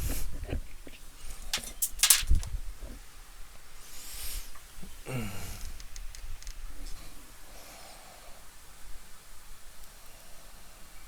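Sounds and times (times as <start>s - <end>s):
clicks and knocks of handled parts: 1.5s - 2.5s
cable rustling: 1.5s - 2.6s.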